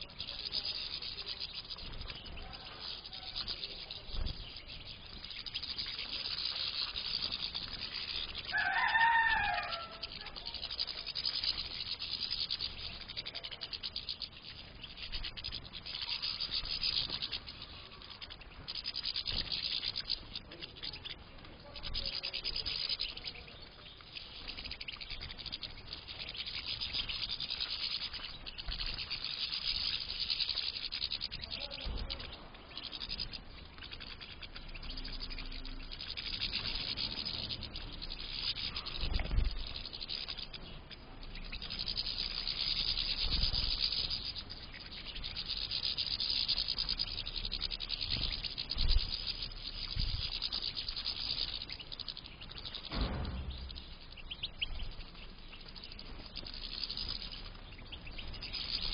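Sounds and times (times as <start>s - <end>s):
flock of finches twittering: 0.0s - 58.9s
dull thumps: 52.8s - 55.0s.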